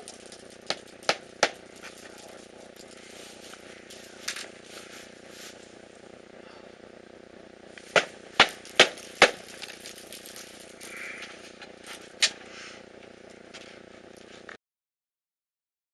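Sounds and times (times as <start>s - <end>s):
low background hum: 0.0s - 14.6s
sharp knocks: 7.9s - 9.4s.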